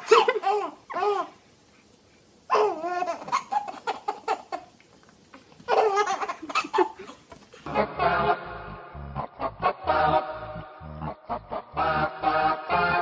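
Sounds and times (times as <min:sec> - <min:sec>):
baby laughing: 0:00.0 - 0:01.4, 0:02.5 - 0:04.7, 0:05.6 - 0:07.3.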